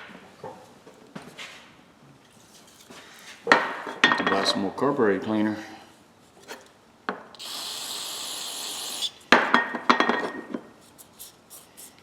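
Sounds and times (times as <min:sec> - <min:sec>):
aerosol can spraying: 0:07.4 - 0:09.2.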